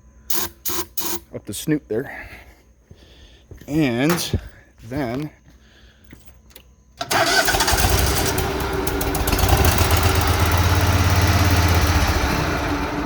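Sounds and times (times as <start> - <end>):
mower engine running: 7.0 - 13.0.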